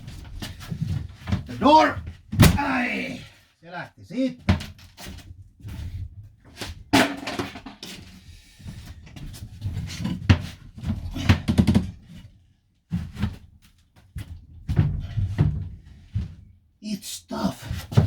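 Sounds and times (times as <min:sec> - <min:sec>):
knocks thumps and scraping in van: 0:12.9 - 0:16.4.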